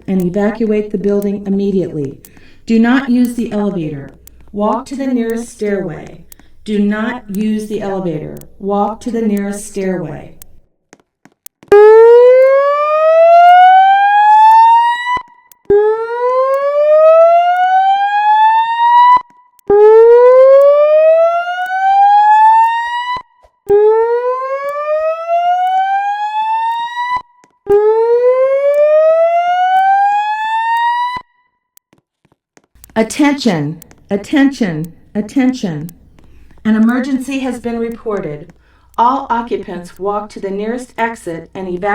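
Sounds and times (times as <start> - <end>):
fire alarm whoop tone: 11.7 - 31.6.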